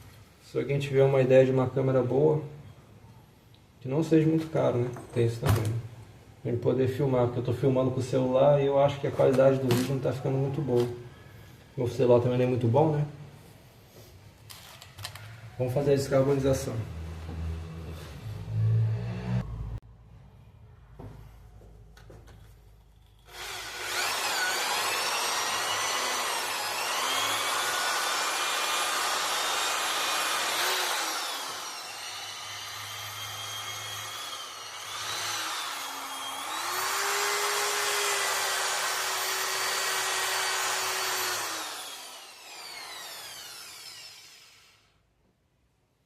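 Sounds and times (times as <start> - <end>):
power tool scouring metal: 23.3 - 44.9.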